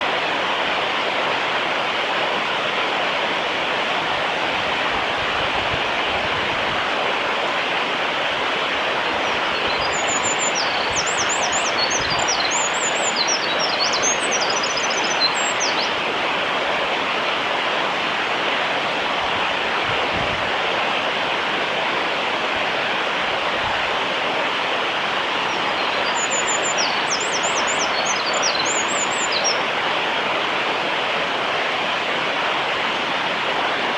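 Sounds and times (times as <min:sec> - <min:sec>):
flowing water rushing: 0:00.0 - 0:33.9
wren singing high trills: 0:09.2 - 0:16.0, 0:25.5 - 0:29.6.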